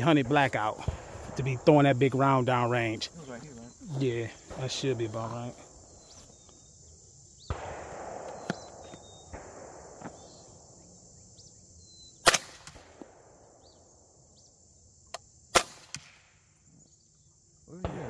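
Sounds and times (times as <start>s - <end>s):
suppressed gunshots: 7.4s - 10.8s, 12.2s - 13.4s, 15.5s - 16.3s.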